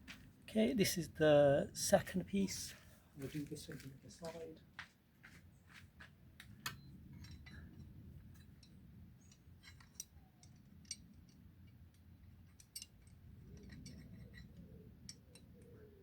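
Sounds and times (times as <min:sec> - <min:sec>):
metallic clicks and taps: 0:08.5 - 0:15.9.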